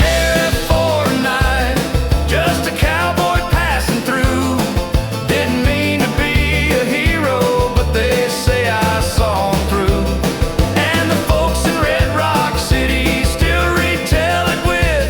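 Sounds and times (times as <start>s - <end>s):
brushed drums: 0.0s - 15.0s
twangy guitar melody: 0.0s - 15.0s
upright bass: 0.0s - 15.0s.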